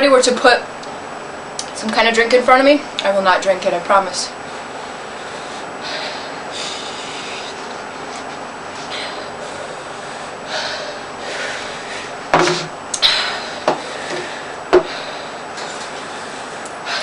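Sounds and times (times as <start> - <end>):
person breathing hard: 4.5 - 8.1, 8.8 - 12.3, 13.0 - 17.0
sharp knocks: 12.3 - 12.7, 13.6 - 14.9.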